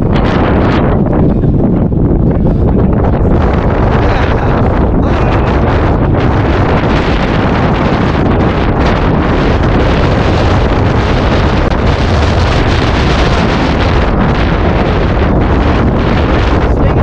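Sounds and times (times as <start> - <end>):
strong wind on microphone: 0.0 - 17.0.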